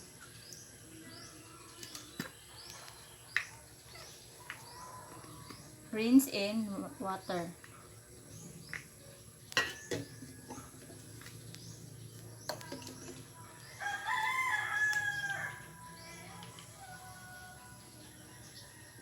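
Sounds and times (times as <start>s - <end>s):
rooster crowing: 13.8s - 15.7s.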